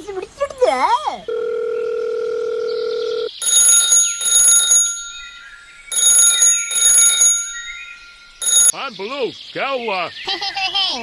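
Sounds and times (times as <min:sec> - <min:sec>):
steady telephone tone: 0:01.3 - 0:08.8
telephone ringing: 0:01.3 - 0:08.8.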